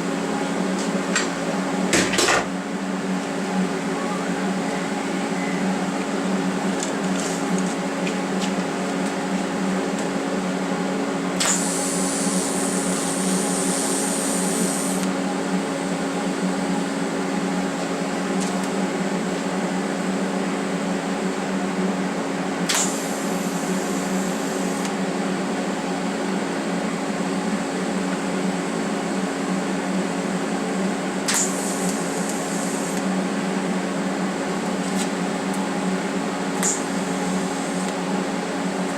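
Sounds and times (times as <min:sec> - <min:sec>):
welding machine humming: 0:00.0 - 0:21.2, 0:22.6 - 0:26.6, 0:29.1 - 0:38.9
sharp click: 0:11.4 - 0:11.7, 0:22.7 - 0:23.0, 0:31.3 - 0:32.4, 0:36.6 - 0:36.8
welding arc hiss: 0:11.4 - 0:15.2, 0:22.6 - 0:25.0, 0:31.2 - 0:33.2, 0:36.4 - 0:38.1.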